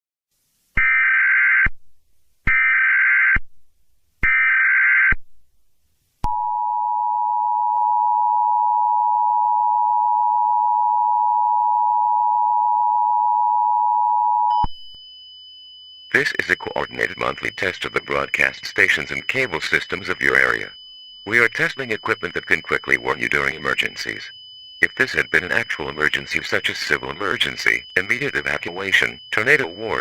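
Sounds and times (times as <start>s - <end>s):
steady two-tone attention signal: 15.9s - 30.0s
digital header tone bursts: 16.1s - 30.0s.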